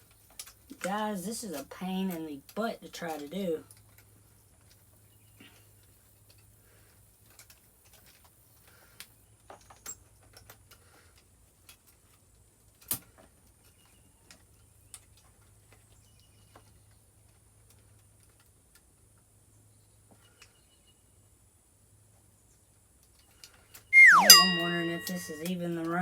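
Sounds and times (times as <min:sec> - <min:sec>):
small clicks and taps: 0:00.0 - 0:04.8.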